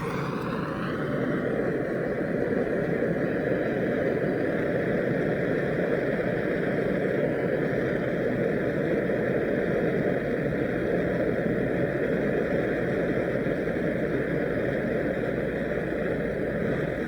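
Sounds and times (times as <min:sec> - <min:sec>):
torch flame burning: 0:00.0 - 0:05.7.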